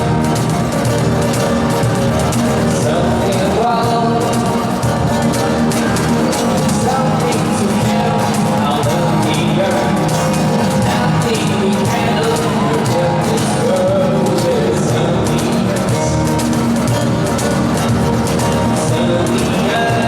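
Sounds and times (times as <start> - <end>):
rock band playing live: 0.0 - 20.0
sung lead vocal: 2.6 - 17.3, 18.5 - 20.0.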